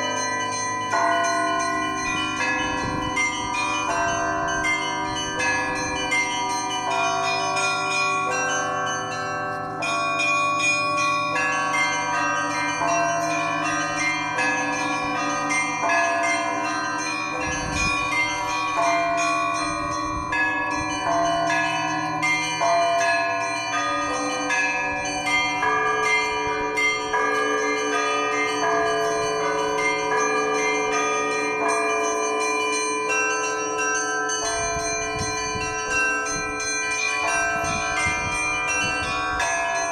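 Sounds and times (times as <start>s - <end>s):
church bells pealing: 0.0s - 39.9s.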